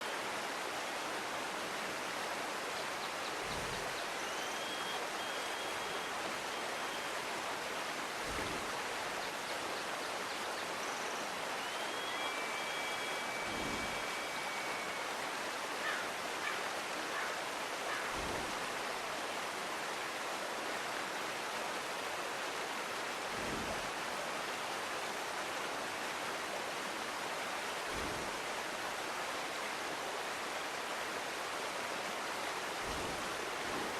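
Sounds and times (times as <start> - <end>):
water flowing in a stream: 0.0 - 33.9
faint whistled chirps: 3.5 - 7.3, 10.3 - 15.4.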